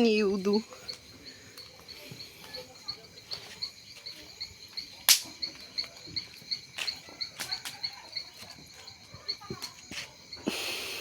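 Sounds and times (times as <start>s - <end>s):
cricket chirping: 0.0s - 11.0s
sharp cracks: 5.1s - 5.4s.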